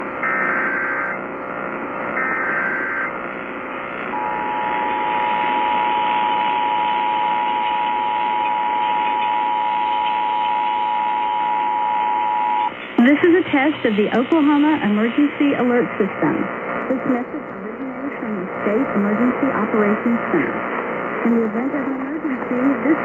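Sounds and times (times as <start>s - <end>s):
radio static hiss: 0.0s - 23.0s
two-tone attention signal: 4.1s - 12.7s.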